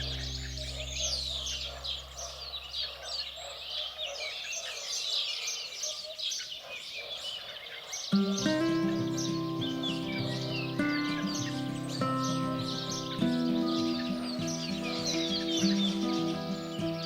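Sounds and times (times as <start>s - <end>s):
held music chord: 0.0s - 2.8s, 8.2s - 17.0s
songbirds chirping: 0.0s - 17.0s.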